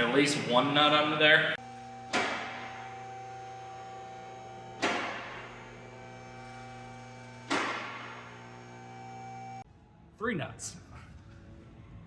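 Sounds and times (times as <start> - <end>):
electrical mains hum: 0.0 - 9.6.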